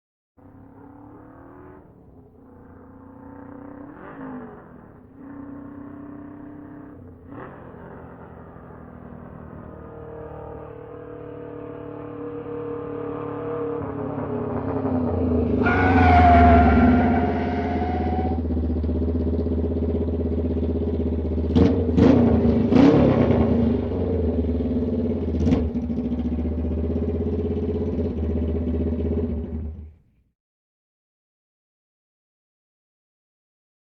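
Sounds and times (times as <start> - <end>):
motorcycle engine revving: 0.4 - 30.1
motorcycle engine idling: 18.4 - 22.6, 23.6 - 30.2.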